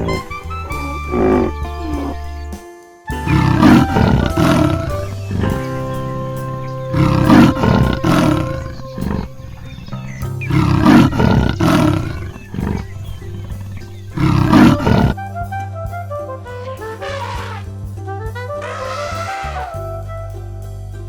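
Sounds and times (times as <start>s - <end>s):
big cat roaring and growling: 0.0s - 0.3s, 1.1s - 2.3s, 3.2s - 15.2s
background music: 0.0s - 21.0s
brassy jazz tune: 0.0s - 21.0s.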